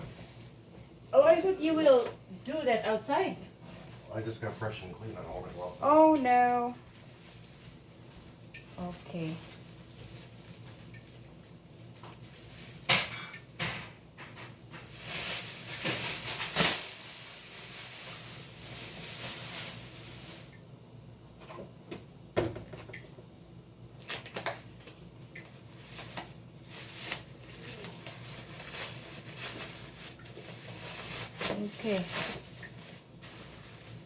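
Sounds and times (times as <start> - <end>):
plastic bags rustling: 3.6 - 20.6, 24.0 - 34.0.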